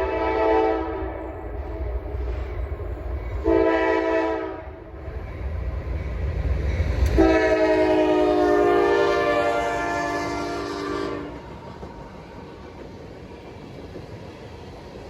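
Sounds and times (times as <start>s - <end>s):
locomotive air horn blasts: 0.0s - 1.2s, 3.4s - 4.8s, 7.2s - 11.4s
train rumbling: 0.0s - 15.0s.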